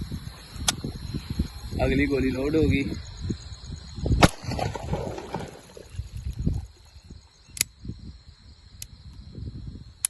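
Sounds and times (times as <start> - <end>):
sharp metallic pistol clicks: 7.5 - 7.8.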